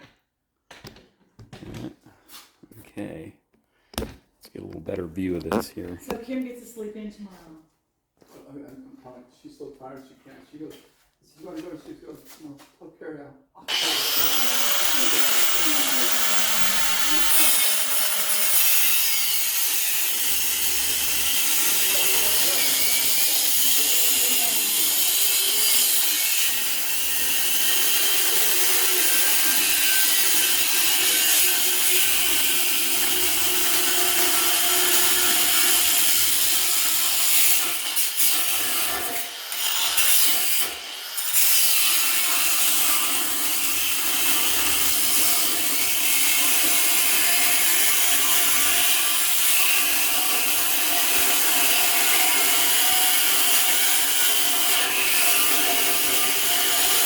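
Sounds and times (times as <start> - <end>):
angle grinder cutting steel: 13.7 - 57.0.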